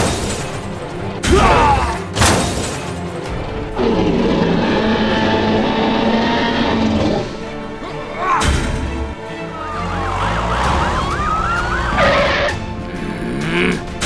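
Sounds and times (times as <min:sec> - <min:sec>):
background music: 0:00.0 - 0:14.0
booming hits: 0:01.2 - 0:02.4.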